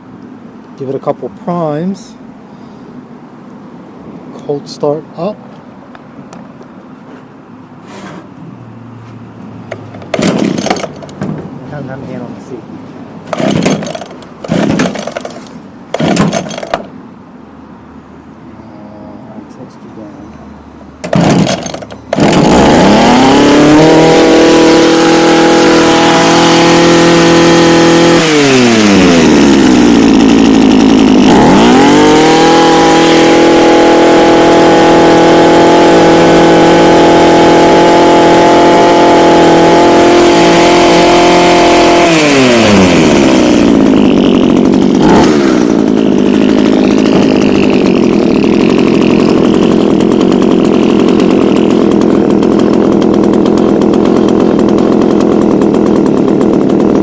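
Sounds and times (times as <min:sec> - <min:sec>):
hedge trimmer engine revving: 0:09.6 - 0:12.0, 0:13.2 - 0:17.0, 0:21.0 - 0:57.0.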